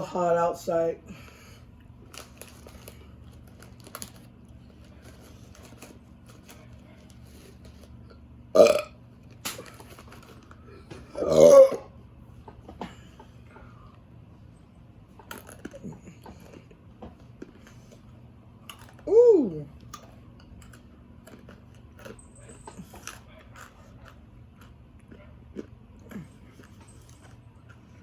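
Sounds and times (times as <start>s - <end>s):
person burping: 8.5s - 9.0s, 11.1s - 11.9s.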